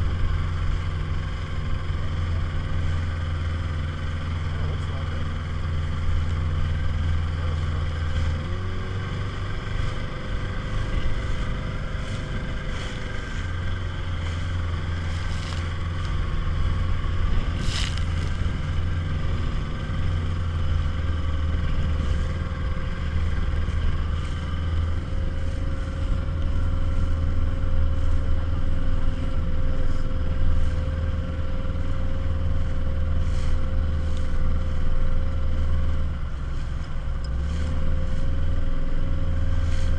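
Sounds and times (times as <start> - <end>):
outboard engine running: 0.0 - 39.9.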